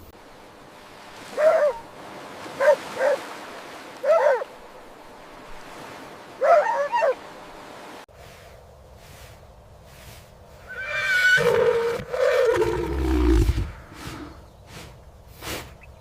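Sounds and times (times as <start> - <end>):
dog barking: 1.4 - 1.8, 2.6 - 3.2, 4.0 - 4.5, 6.4 - 7.2.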